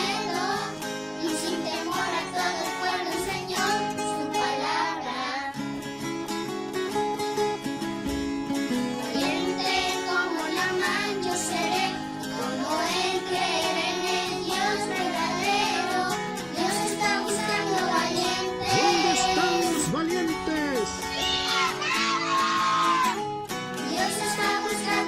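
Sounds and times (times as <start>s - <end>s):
children singing: 0.0s - 5.6s, 9.1s - 19.9s, 21.0s - 23.2s, 23.8s - 25.0s
instrumental backing music: 0.0s - 25.0s.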